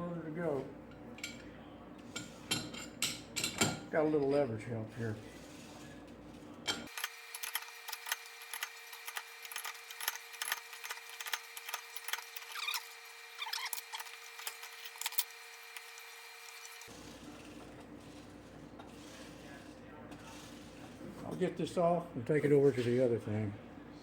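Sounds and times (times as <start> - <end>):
short squeaks: 12.4 - 14.1.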